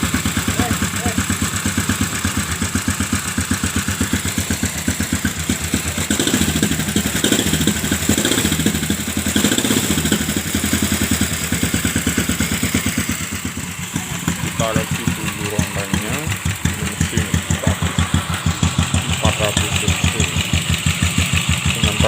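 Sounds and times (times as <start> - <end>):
motorcycle engine idling: 0.0 - 22.0.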